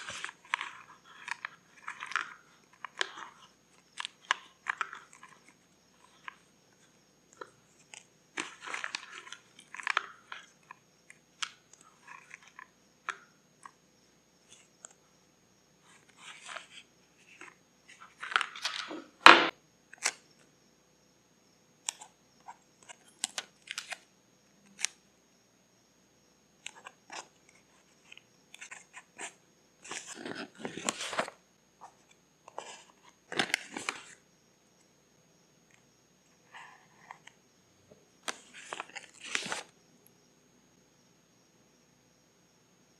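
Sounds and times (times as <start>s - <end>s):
paper crinkling and rustling: 0.0s - 6.4s, 7.4s - 10.8s, 15.8s - 19.1s, 26.6s - 34.2s, 38.2s - 39.7s.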